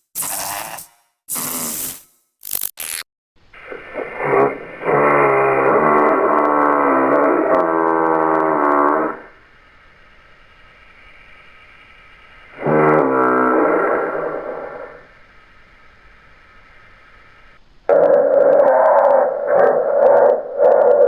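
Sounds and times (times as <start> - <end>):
low wavering frog call: 4.0 - 9.3, 17.9 - 21.0
faint hiss: 9.1 - 13.1, 13.8 - 17.9.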